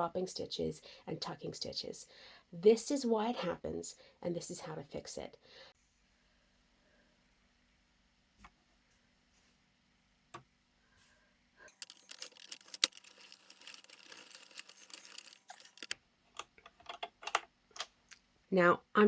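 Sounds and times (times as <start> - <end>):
plastic knitting machine clicking: 11.7 - 17.9.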